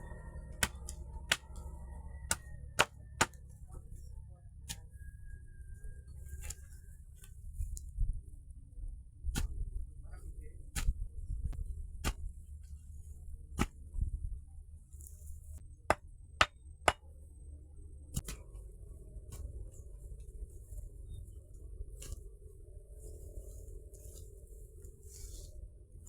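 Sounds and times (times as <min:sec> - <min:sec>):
low rumble: 0:00.0 - 0:26.0
tool striking wood: 0:00.6 - 0:01.5, 0:02.3 - 0:03.4, 0:15.9 - 0:17.0.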